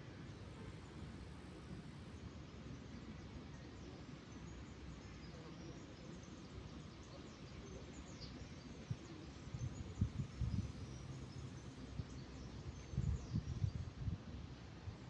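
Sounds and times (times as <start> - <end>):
faint songbird chirps: 4.3 - 14.2.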